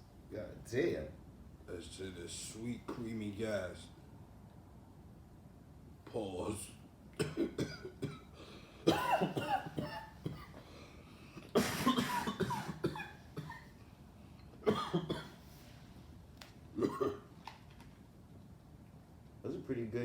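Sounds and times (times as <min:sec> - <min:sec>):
man coughing: 0:07.2 - 0:10.6, 0:11.4 - 0:13.8, 0:14.6 - 0:15.4, 0:16.8 - 0:17.3.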